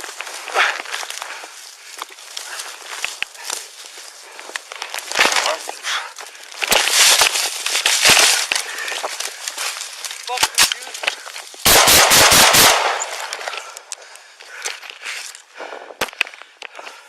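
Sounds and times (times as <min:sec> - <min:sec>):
struggle noise: 0:00.0 - 0:11.6
rapid gunshots: 0:11.6 - 0:13.3.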